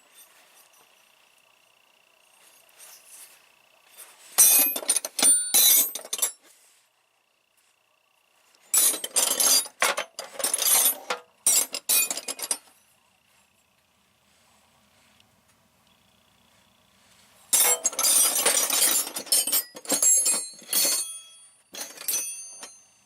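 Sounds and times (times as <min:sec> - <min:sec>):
metal tools clinking in drawer: 0:04.0 - 0:06.5, 0:08.7 - 0:12.9, 0:17.5 - 0:23.0.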